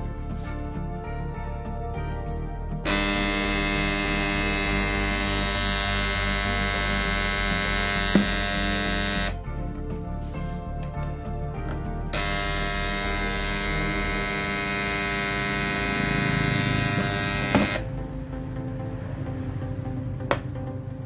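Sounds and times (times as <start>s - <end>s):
background music: 0.0s - 21.0s
transformer buzzing loudly: 2.8s - 9.4s, 12.1s - 17.9s.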